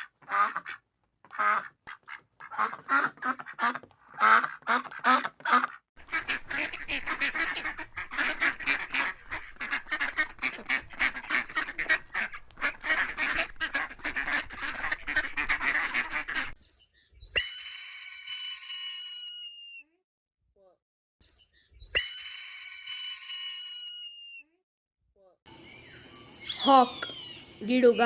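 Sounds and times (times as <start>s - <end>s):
ducks quacking: 0.2s - 16.6s.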